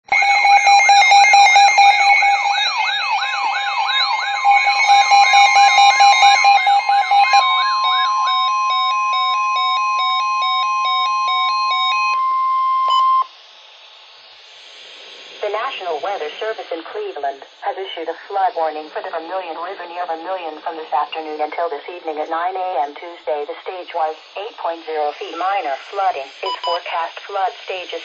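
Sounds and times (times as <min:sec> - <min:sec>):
steady high alert tone: 0:00.1 - 0:13.3
stepping two-note alarm: 0:00.1 - 0:13.3
fast repeating alert wail: 0:00.2 - 0:12.1.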